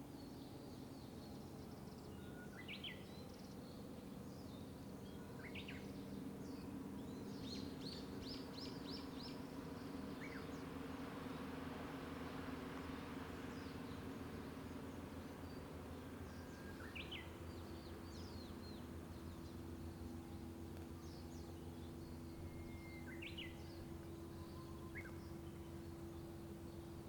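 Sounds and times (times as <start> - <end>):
faint road traffic hum: 0.1 - 27.0
birds chirping: 15.4 - 27.0.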